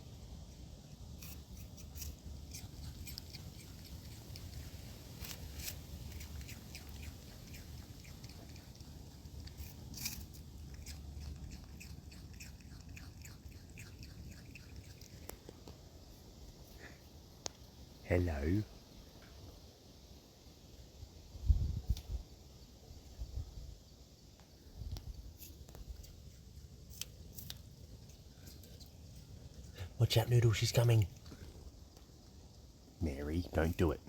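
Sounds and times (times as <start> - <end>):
low background hum: 0.0 - 34.0
possum chewing and crunching: 0.6 - 17.7, 24.9 - 34.0.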